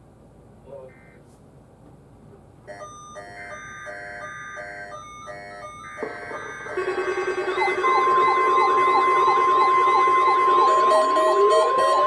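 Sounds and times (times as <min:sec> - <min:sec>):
short electronic beeps: 0:00.9 - 0:01.2, 0:05.5 - 0:12.0
wavering siren-like alarm: 0:02.8 - 0:12.0.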